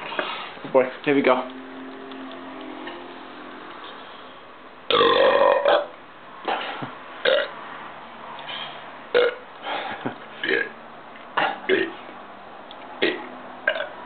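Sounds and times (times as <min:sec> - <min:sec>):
man burping: 0:04.9 - 0:05.9, 0:07.2 - 0:07.5, 0:09.1 - 0:10.8, 0:11.4 - 0:12.0, 0:13.0 - 0:13.9.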